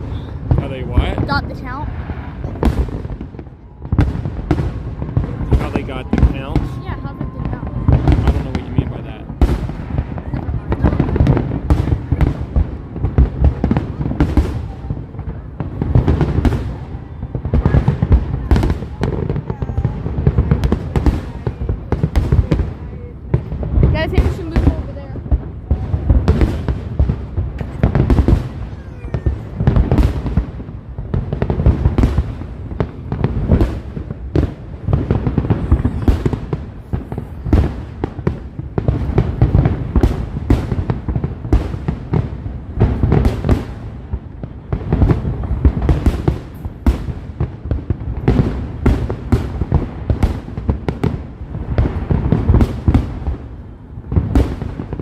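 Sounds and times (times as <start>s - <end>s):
fireworks bangs and crackles: 0.0s - 55.0s
low rumble of booms: 0.0s - 55.0s.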